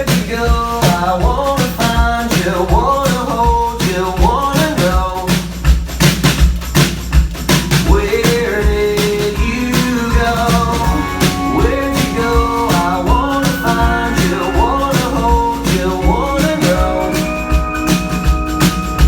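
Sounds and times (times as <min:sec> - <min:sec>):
drum kit beat: 0:00.0 - 0:19.0
person singing: 0:07.9 - 0:19.0
bass line: 0:09.4 - 0:19.0.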